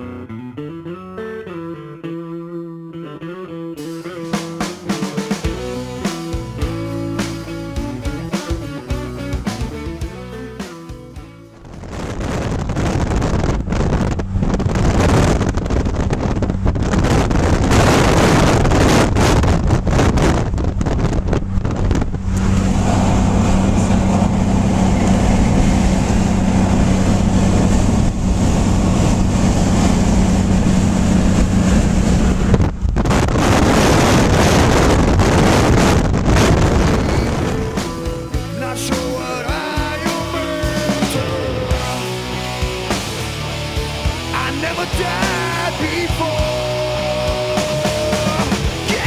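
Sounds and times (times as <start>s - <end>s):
storm wind gusting: 11.6s - 39.8s
steady low hum: 11.6s - 44.4s.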